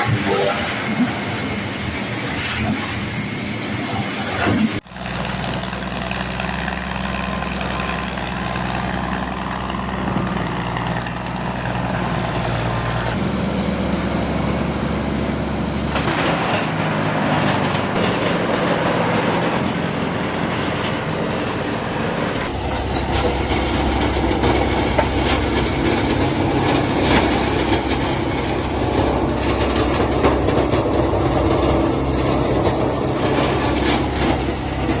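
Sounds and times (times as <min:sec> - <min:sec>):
wood chipper motor hum: 0:00.0 - 0:02.2, 0:04.9 - 0:22.8
wood crunching in chipper: 0:05.0 - 0:22.6.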